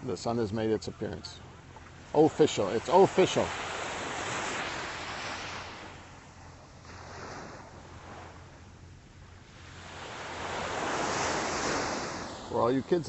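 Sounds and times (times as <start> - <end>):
surf washing up beach: 2.0 - 8.6, 9.4 - 13.0.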